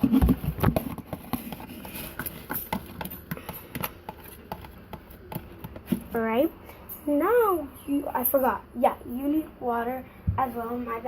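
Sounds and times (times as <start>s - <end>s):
utensil stirring in container: 0.0s - 6.2s.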